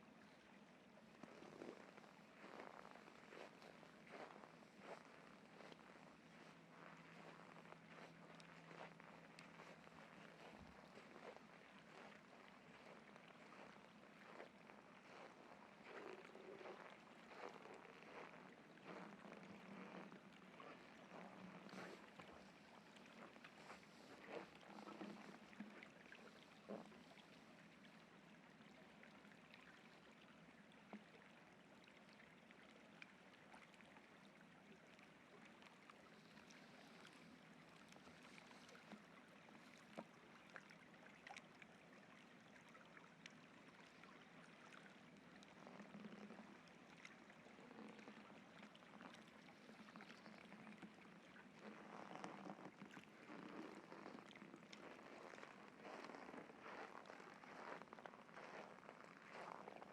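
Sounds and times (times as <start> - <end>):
footsteps crunching in snow: 2.4 - 12.1, 12.7 - 19.1, 55.3 - 59.8.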